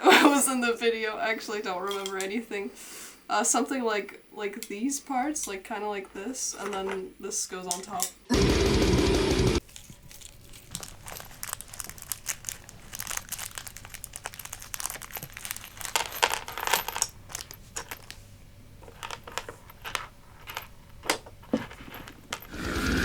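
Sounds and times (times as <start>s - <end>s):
small metal parts clinking: 1.8s - 2.3s, 9.6s - 18.2s, 18.8s - 22.7s.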